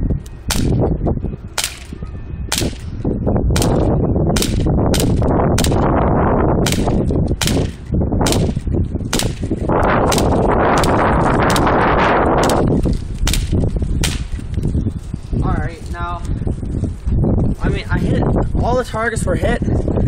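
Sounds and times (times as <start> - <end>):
wind buffeting microphone: 0.0 - 20.0
air pistol firing sharp pops: 0.5 - 0.8, 1.6 - 2.9, 3.6 - 5.9, 6.6 - 11.8, 12.4 - 14.4.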